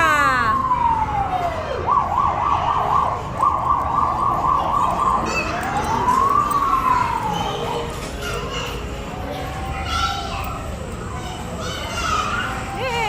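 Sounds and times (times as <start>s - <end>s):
siren wailing and yelping: 0.0s - 7.8s.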